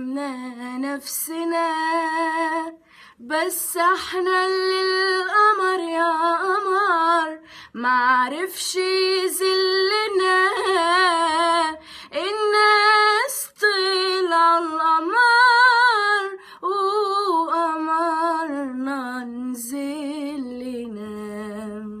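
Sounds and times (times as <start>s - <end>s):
woman singing unaccompanied: 0.0s - 22.0s.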